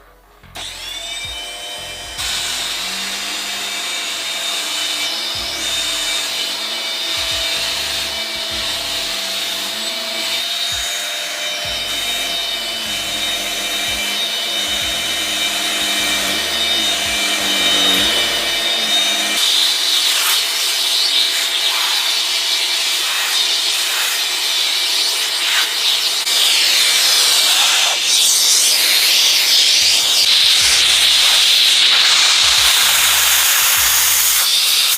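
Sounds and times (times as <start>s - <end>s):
vacuum cleaner motor whine: 0.0s - 34.9s
vacuum nozzle rubbing on surface: 11.7s - 22.2s, 25.0s - 34.9s.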